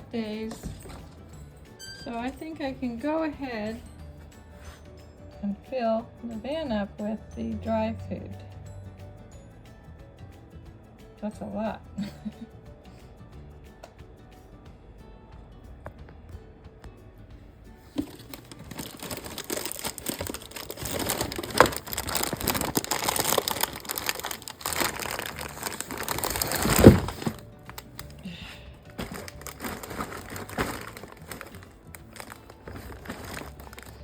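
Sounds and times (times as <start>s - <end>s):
background music: 0.0s - 34.0s
plastic packaging crinkling: 18.0s - 34.0s.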